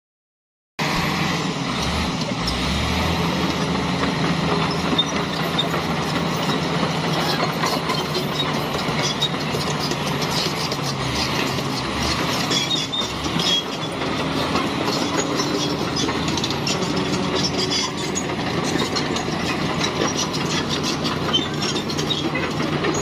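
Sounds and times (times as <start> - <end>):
diesel engine running: 0.8 - 23.0
steel tracks clattering: 1.8 - 23.0.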